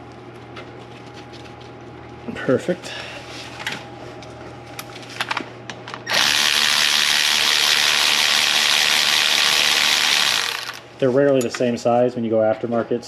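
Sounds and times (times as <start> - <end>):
power ratchet running: 6.1 - 10.9.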